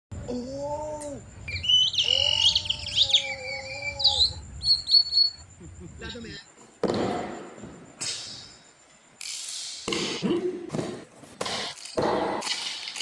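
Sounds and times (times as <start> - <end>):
low hummed vocal tone: 0.1 - 1.4, 2.0 - 4.6
person whistling birdsong: 1.5 - 5.4.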